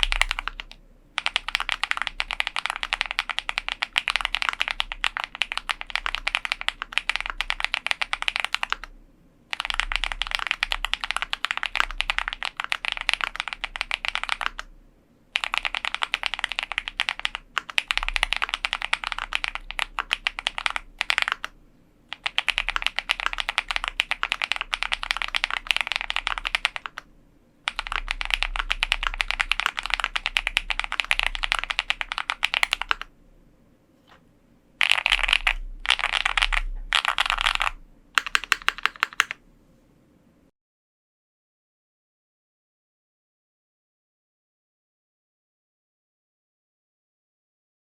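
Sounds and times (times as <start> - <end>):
mechanical keyboard typing: 0.0 - 8.9, 9.5 - 14.7, 15.4 - 27.1, 27.7 - 33.1, 34.8 - 39.4.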